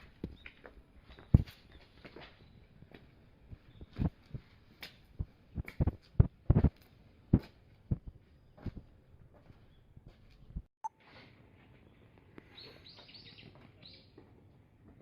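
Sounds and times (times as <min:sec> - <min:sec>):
short irregular knocks and thumps: 0:05.2 - 0:06.7.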